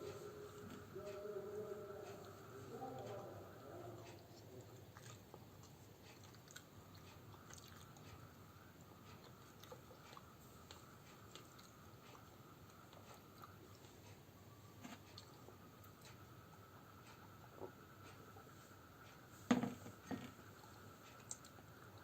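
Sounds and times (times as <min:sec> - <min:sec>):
faint high hum: 0:00.0 - 0:22.0
chewing food: 0:03.8 - 0:14.2, 0:14.9 - 0:16.2, 0:20.4 - 0:22.0.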